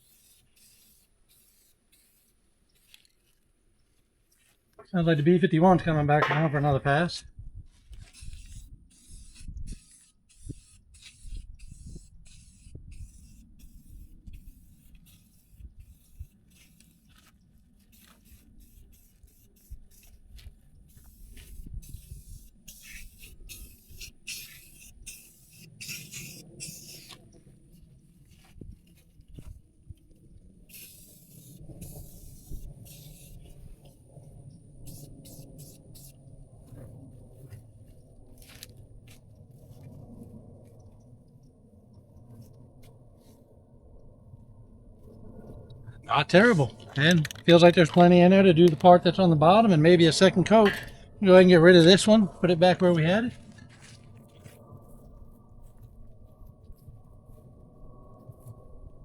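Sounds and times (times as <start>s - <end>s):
spray paint can hissing: 0.0s - 3.3s, 7.9s - 27.5s, 30.6s - 36.3s.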